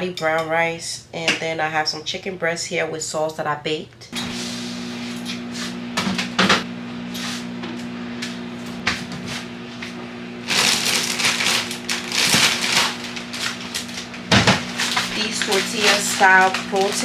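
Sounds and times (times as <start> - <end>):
microwave humming: 4.1 - 17.0
plastic snack bag crinkling: 10.4 - 17.0.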